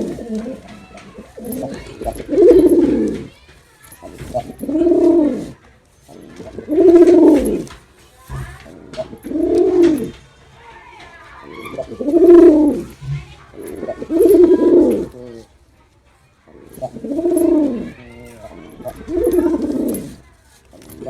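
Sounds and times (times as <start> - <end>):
pigeon cooing: 0.0 - 3.4, 4.0 - 7.8, 8.8 - 10.2, 11.5 - 15.6, 16.5 - 20.2.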